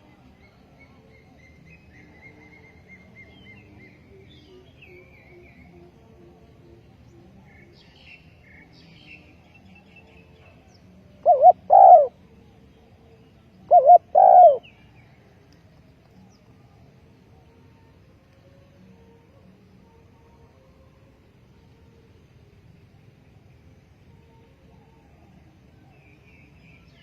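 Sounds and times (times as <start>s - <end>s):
small birds chirping faintly: 0.0s - 27.0s
dove cooing: 11.2s - 12.2s, 13.7s - 14.7s.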